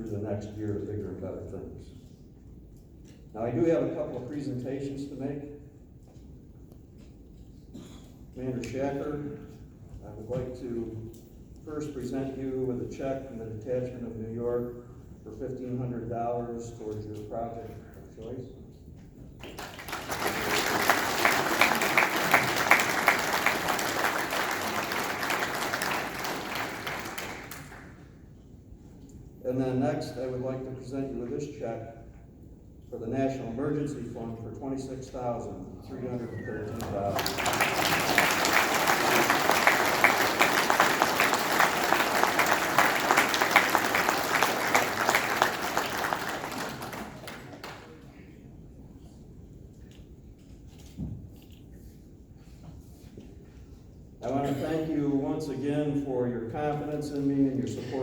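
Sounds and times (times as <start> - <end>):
audience applauding: 19.4 - 28.0, 36.7 - 48.1.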